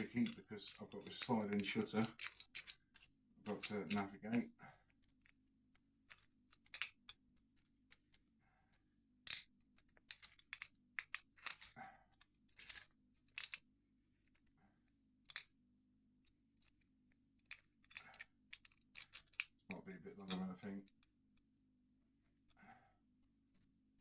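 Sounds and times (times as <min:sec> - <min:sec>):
lock picks clicking and scraping: 0:00.0 - 0:04.1, 0:04.9 - 0:08.2, 0:09.3 - 0:13.7, 0:15.2 - 0:15.5, 0:16.2 - 0:21.1.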